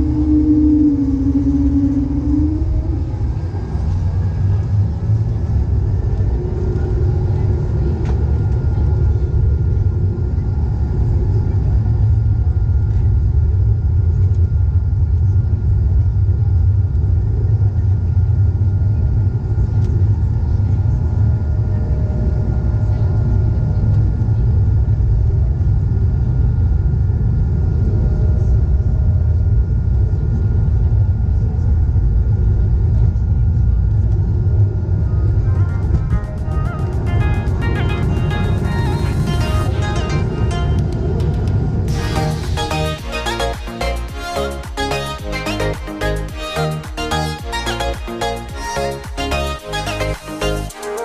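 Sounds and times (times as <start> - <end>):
aircraft cabin engine rumble: 0.0 - 43.6
thin steady whine: 0.0 - 51.0
background music: 35.4 - 51.0.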